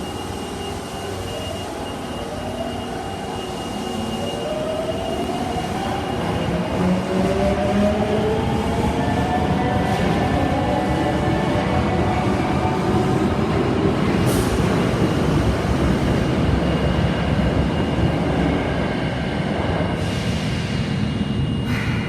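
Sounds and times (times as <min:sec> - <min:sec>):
subway train motor whine: 0:00.0 - 0:22.0.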